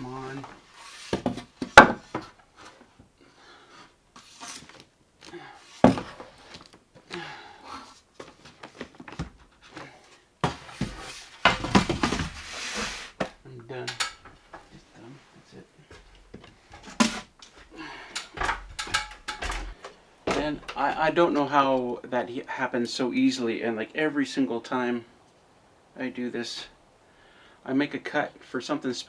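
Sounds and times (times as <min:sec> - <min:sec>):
wood scraping and clattering: 0:00.0 - 0:02.9, 0:03.6 - 0:04.9, 0:05.6 - 0:06.8, 0:08.2 - 0:14.8, 0:15.9 - 0:21.5.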